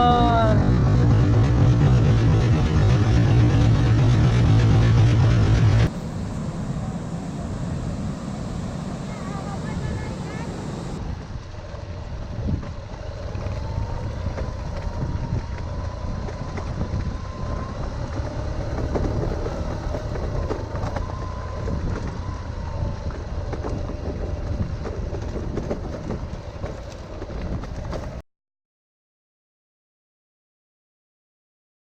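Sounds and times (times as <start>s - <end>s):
motorbike engine running: 0.0s - 7.6s, 8.2s - 28.2s.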